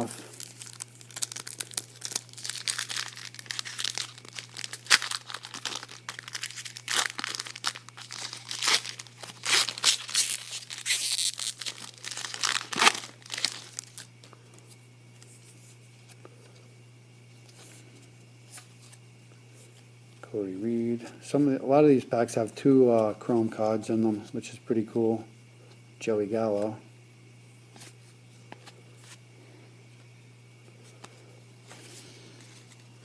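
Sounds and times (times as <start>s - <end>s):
plastic wrapper tearing and crinkling: 0.0s - 14.1s.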